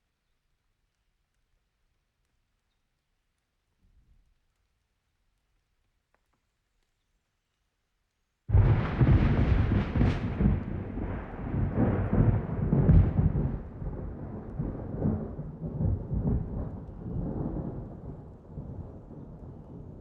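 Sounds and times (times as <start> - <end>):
sharp thunder cracks: 8.5 - 20.0
thunder rumbling: 8.5 - 20.0.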